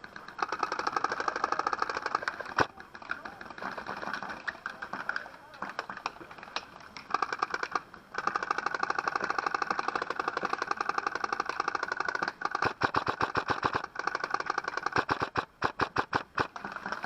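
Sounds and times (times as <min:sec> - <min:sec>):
airsoft gun firing bursts: 0:00.3 - 0:02.6, 0:07.1 - 0:17.0.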